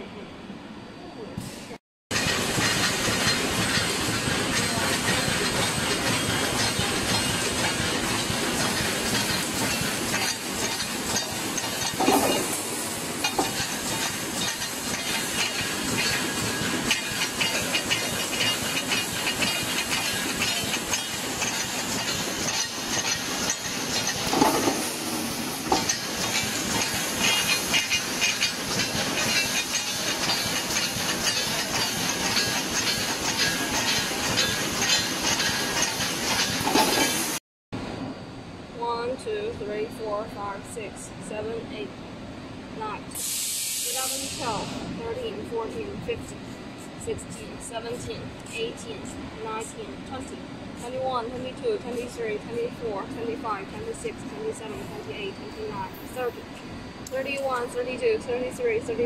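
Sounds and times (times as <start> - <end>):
welding machine clattering: 2.1 - 37.2.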